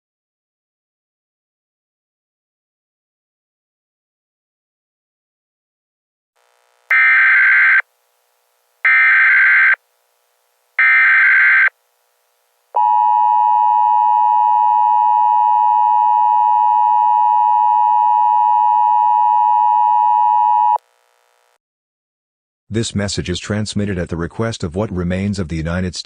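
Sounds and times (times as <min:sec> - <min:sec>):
two-tone attention signal: 0:06.9 - 0:07.8, 0:08.9 - 0:09.8, 0:10.8 - 0:11.7
warbling data bursts: 0:06.9 - 0:07.8, 0:08.9 - 0:09.8, 0:10.8 - 0:11.7.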